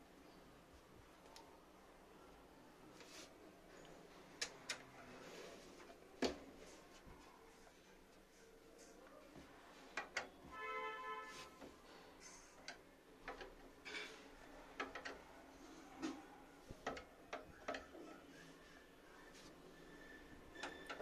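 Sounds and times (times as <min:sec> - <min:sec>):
computer parts clicking and tapping: 0:09.9 - 0:10.7, 0:12.2 - 0:15.2, 0:16.8 - 0:18.1, 0:20.5 - 0:21.0.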